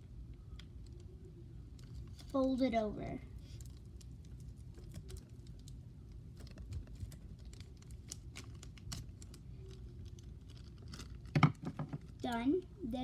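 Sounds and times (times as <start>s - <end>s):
plastic bag crinkling: 3.4s - 12.3s.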